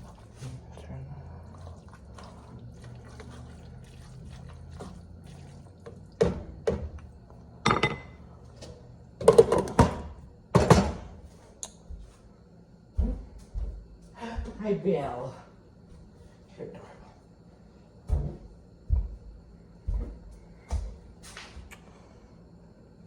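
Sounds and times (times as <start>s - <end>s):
cookware knocking and clattering: 7.6s - 8.2s, 9.2s - 11.0s.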